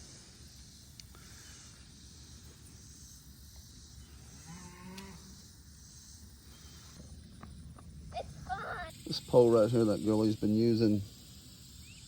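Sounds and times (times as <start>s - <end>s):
insects buzzing: 0.0s - 12.0s
faint cow moo: 4.4s - 5.3s.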